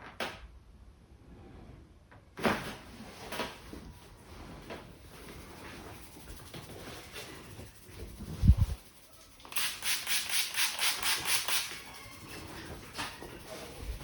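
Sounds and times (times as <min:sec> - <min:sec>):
hands rubbing hair: 0:04.5 - 0:14.0.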